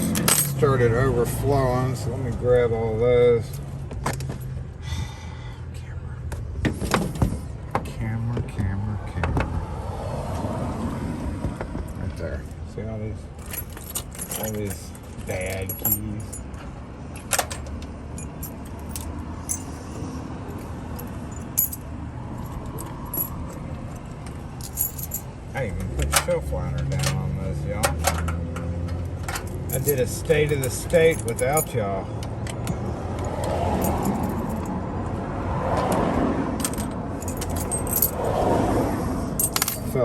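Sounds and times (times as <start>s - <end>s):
metal keys clinking and jangling: 0.0s - 0.6s, 13.4s - 16.6s, 17.2s - 25.3s, 29.2s - 31.8s, 33.8s - 34.7s, 36.6s - 38.4s, 39.4s - 40.0s.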